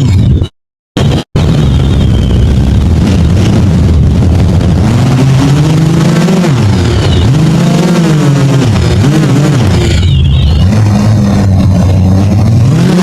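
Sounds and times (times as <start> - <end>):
drone motors whining: 8.6 - 12.6.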